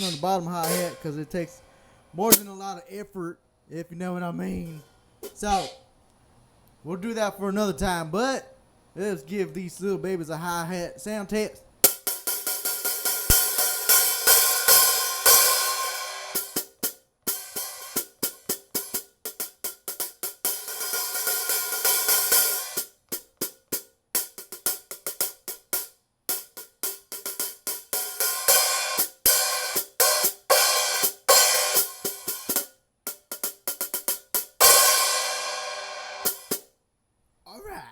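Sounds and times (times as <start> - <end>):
closed hi-hat strikes: 0.0 - 1.6, 2.2 - 2.8, 4.4 - 5.9, 11.8 - 16.8, 26.4 - 32.7
open hi-hat ringing wash: 0.0 - 1.6.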